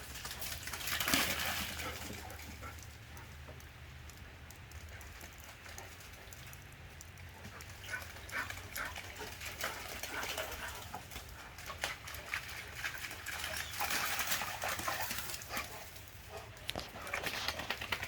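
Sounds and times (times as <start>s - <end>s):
dog paws scuffing and clicking: 0.0s - 18.0s.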